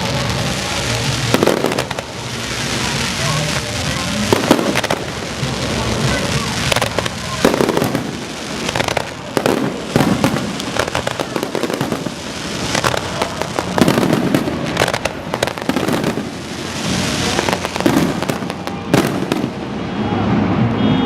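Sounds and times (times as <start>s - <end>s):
fireworks bangs and crackling: 0.0s - 21.0s.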